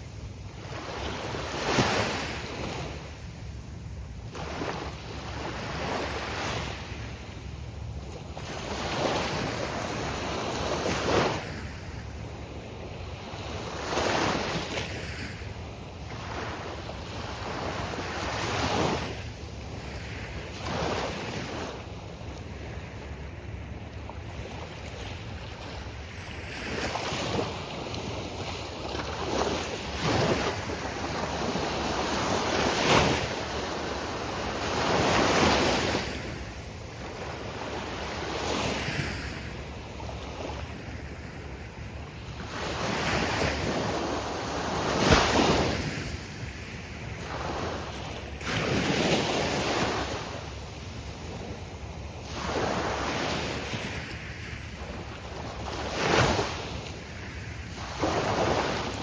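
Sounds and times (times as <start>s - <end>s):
ocean surf breaking on beach: 28.2s - 59.0s.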